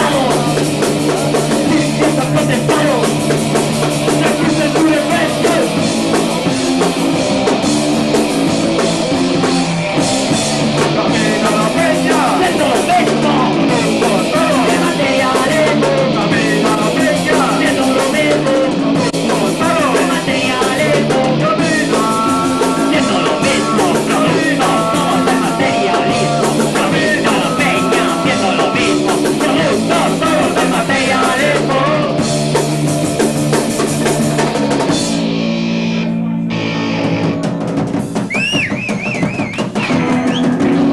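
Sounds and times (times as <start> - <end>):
person singing: 0.0 - 3.2, 4.0 - 5.9, 10.9 - 32.2
punk rock band playing: 0.0 - 40.9.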